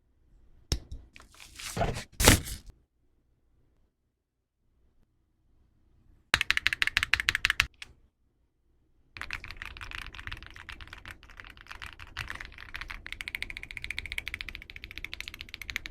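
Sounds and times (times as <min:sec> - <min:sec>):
mechanical keyboard typing: 0:06.4 - 0:07.7, 0:09.2 - 0:15.9.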